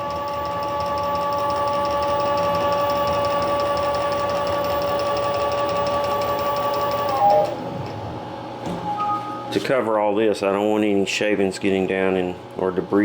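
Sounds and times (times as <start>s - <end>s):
stepper motor whine and ticking: 0.0s - 7.7s.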